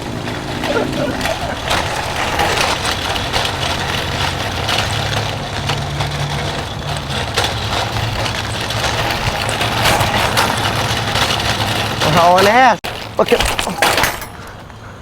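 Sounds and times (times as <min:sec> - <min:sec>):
vehicle engine running: 0:00.0 - 0:12.4.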